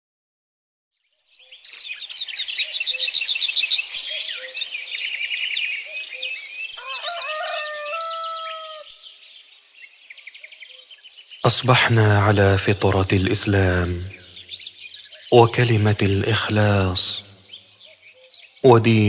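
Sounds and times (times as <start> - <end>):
small birds chirping: 1.0 - 19.0
rooster crowing: 6.8 - 9.0.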